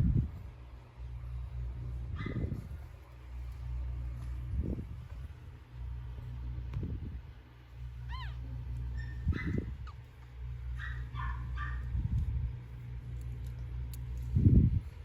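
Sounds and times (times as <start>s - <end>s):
puppy squeaking and whimpering: 8.0s - 10.1s.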